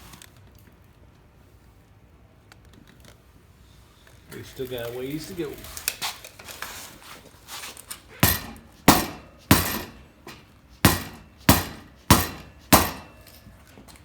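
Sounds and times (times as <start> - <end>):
hammer striking metal wheel rim: 8.2 - 13.4.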